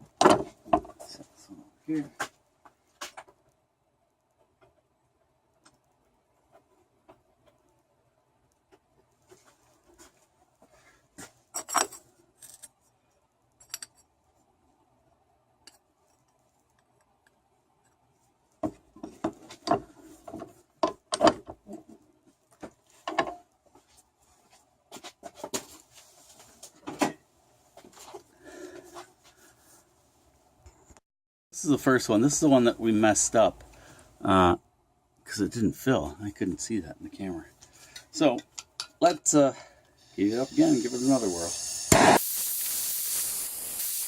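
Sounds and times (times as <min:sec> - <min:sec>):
metal tools clinking on workbench: 0:11.5 - 0:12.7.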